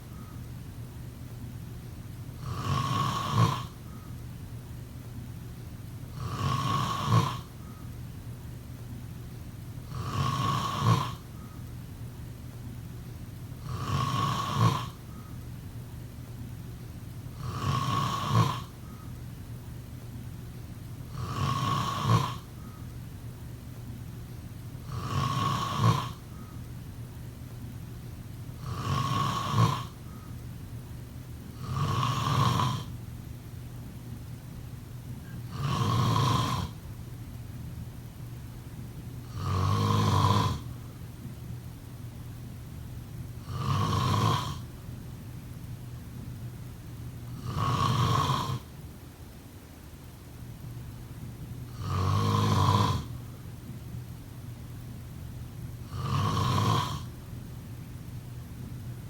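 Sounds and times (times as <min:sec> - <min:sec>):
person snoring: 0:02.4 - 0:03.8, 0:06.1 - 0:07.7, 0:09.9 - 0:11.2, 0:13.6 - 0:15.0, 0:17.4 - 0:18.7, 0:21.1 - 0:22.5, 0:24.8 - 0:26.4, 0:28.6 - 0:30.2, 0:31.6 - 0:32.9, 0:35.2 - 0:36.8, 0:39.3 - 0:40.7, 0:43.4 - 0:44.7, 0:47.3 - 0:48.7, 0:51.7 - 0:53.2, 0:55.8 - 0:57.1.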